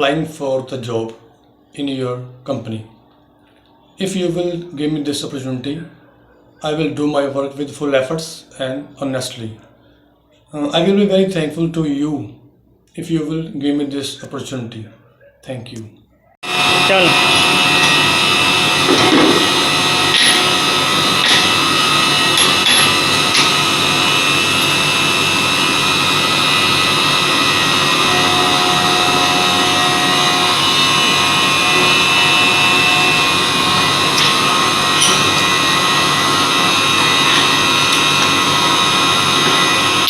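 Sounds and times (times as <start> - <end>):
high whining spindle tones: 16.4 - 40.0
milling machine cutting metal: 16.4 - 40.0.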